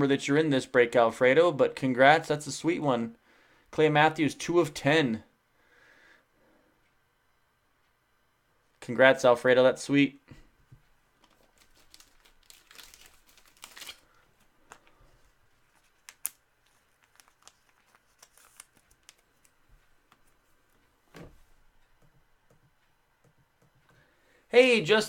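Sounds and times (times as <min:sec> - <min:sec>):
plastic and paper crinkling: 0:11.2 - 0:20.9.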